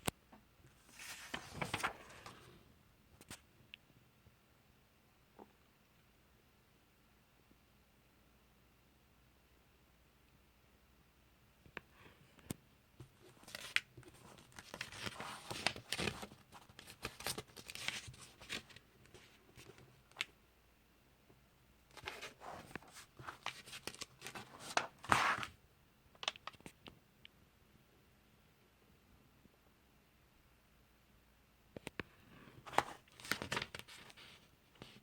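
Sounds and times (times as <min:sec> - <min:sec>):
comic book pages rustling: 0:00.7 - 0:02.5, 0:13.2 - 0:20.3, 0:21.9 - 0:25.6, 0:32.6 - 0:35.0.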